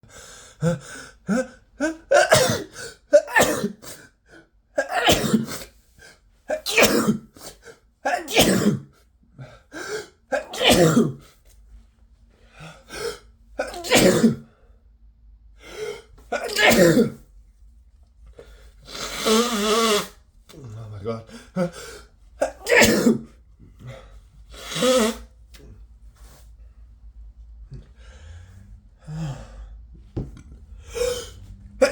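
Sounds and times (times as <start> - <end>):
man sneezing: 1.3 - 4.0, 4.8 - 5.7, 6.5 - 8.9, 10.3 - 11.2, 13.1 - 14.5, 16.3 - 17.2, 21.3 - 24.0, 24.6 - 25.8, 30.8 - 31.9.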